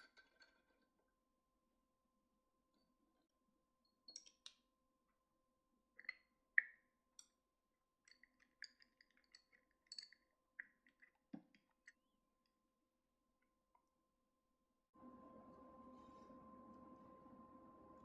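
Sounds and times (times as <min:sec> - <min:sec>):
faint steady tone: 0:15.0 - 0:18.0.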